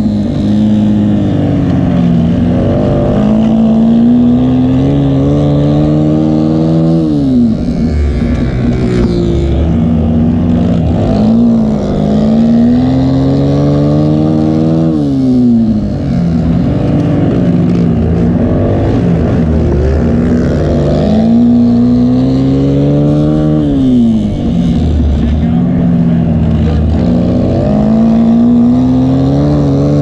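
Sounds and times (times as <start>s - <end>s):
engine running steadily: 0.0s - 30.0s
race engines revving: 0.0s - 30.0s.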